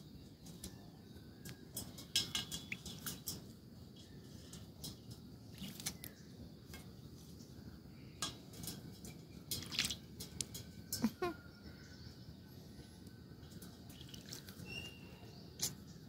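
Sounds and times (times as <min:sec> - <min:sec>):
water splashing and dripping: 0:01.7 - 0:06.1, 0:08.2 - 0:11.1, 0:13.4 - 0:14.9.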